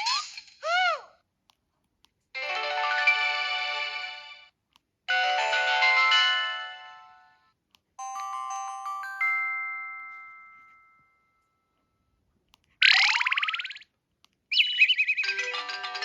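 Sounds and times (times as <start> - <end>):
phone alert tones chiming: 8.0 - 11.2.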